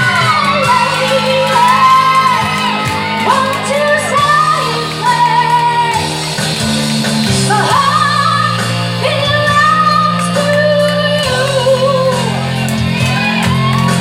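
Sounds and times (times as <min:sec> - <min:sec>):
live rock band playing: 0:00.0 - 0:14.0
person singing: 0:07.4 - 0:12.7.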